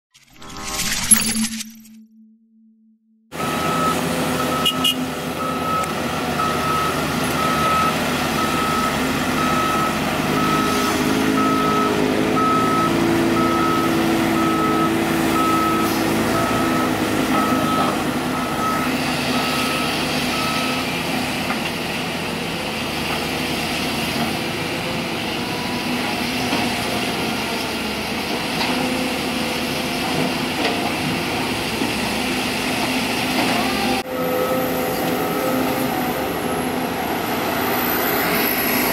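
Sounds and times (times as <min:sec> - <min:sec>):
reversing alarm beeping: 0:00.6 - 0:21.1, 0:33.7 - 0:38.9
diesel engines running: 0:03.3 - 0:38.9.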